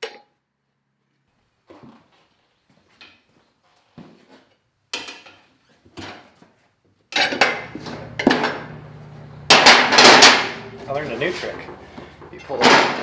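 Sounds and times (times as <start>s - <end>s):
metallic clatter: 7.2s - 13.0s
low steady hum: 7.4s - 13.0s.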